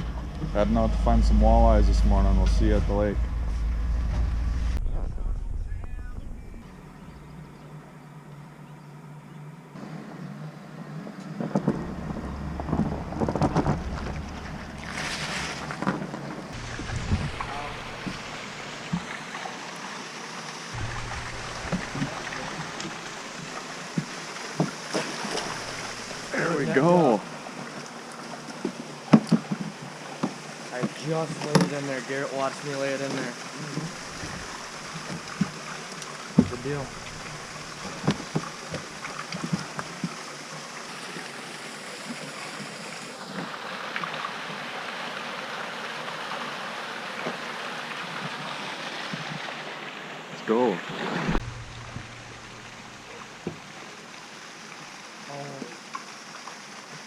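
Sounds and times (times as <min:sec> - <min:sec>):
water rushing around boat: 0:00.0 - 0:07.6, 0:09.8 - 0:57.0
low rumble: 0:00.0 - 0:08.8, 0:11.4 - 0:19.3, 0:20.8 - 0:24.2, 0:25.1 - 0:26.4, 0:33.8 - 0:35.4, 0:36.4 - 0:39.2, 0:51.2 - 0:54.2
wind: 0:00.0 - 0:57.0.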